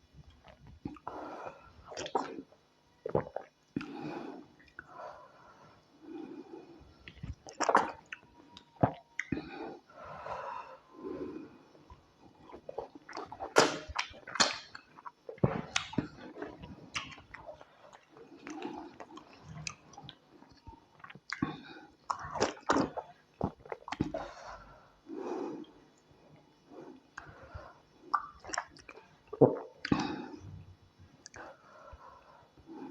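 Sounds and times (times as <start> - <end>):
wet mouth noises: 1.8 - 4.9, 7.0 - 9.5, 11.9 - 24.2, 27.0 - 30.5, 31.2 - 31.6.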